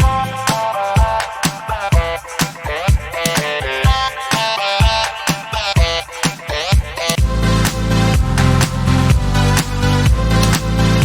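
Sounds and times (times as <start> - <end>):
electronic dance music: 0.0 - 11.0
heavy bass line: 7.2 - 11.0.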